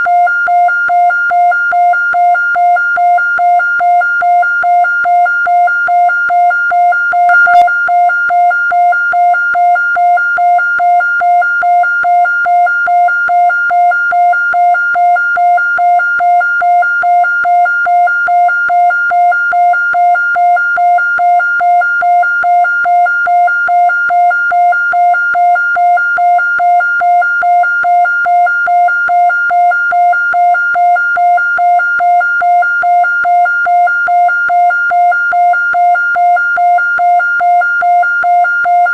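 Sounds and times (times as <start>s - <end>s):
pulsing electronic siren tone: 7.3s - 7.8s.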